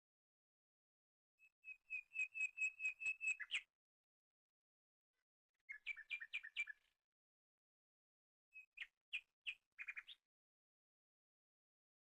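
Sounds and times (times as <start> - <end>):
bird whistling notes: 1.8 - 3.6.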